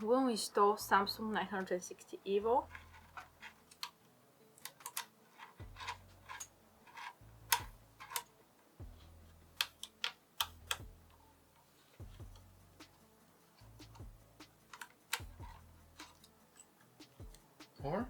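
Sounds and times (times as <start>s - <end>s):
light clicks of computer parts handled: 2.7s - 8.3s.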